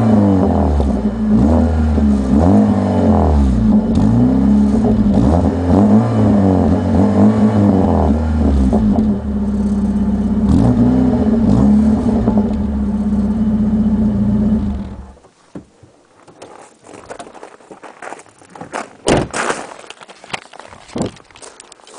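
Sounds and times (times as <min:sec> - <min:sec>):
car engine revving and idling: 0:00.0 - 0:15.2.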